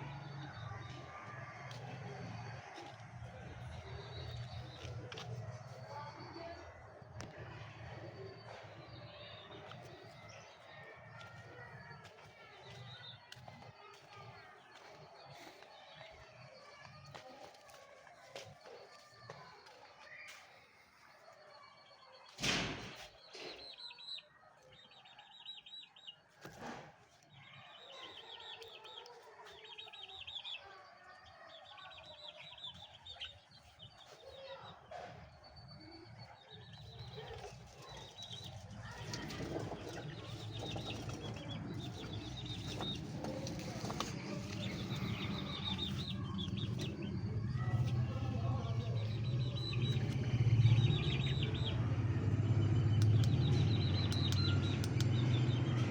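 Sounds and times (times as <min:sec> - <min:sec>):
birds chirping trills: 0:27.6 - 0:55.9.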